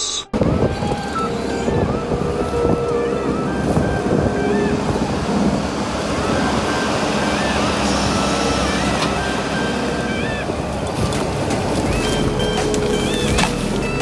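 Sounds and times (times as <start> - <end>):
background music with held notes: 0.3 - 14.0
heavy machine engine running: 11.0 - 14.0.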